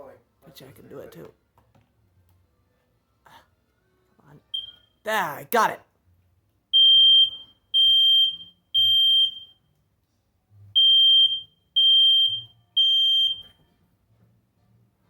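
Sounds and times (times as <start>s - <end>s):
smoke alarm beeps: 4.5s - 5.0s, 6.8s - 9.6s, 10.8s - 13.6s.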